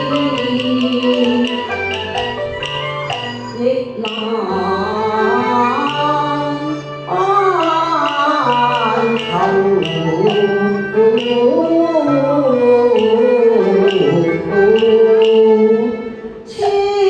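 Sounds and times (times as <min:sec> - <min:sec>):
opera singing: 0:00.0 - 0:01.7, 0:03.6 - 0:17.0
percussion clicks: 0:00.0 - 0:04.4, 0:05.7 - 0:06.4, 0:07.5 - 0:11.6, 0:12.9 - 0:15.6.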